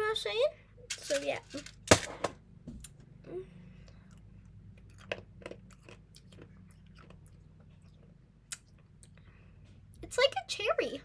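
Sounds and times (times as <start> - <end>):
person chewing hard candy: 3.8 - 9.2.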